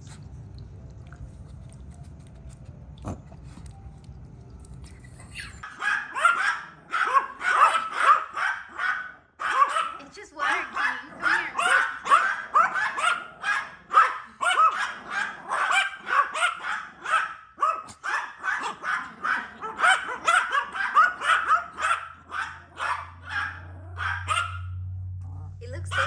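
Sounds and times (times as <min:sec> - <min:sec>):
low steady hum: 0:00.0 - 0:05.7, 0:23.7 - 0:26.0
small dogs yapping: 0:05.3 - 0:24.8, 0:25.4 - 0:26.0.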